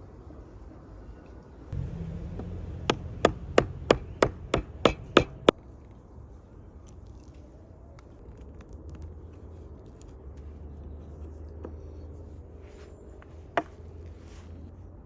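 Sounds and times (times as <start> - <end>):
low steady hum: 1.7 - 5.6
hand tool scraping wood: 1.8 - 5.5
sharp knock: 2.4 - 5.5.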